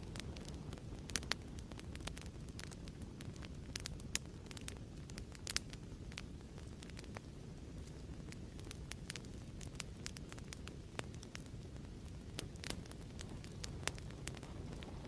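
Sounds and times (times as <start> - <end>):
fire popping and snapping: 0.0 - 15.0
fireplace crackling: 0.0 - 15.0.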